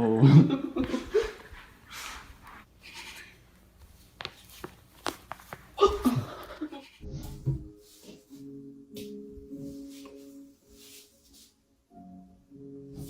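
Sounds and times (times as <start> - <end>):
person laughing: 0.0 - 1.5, 5.8 - 6.9.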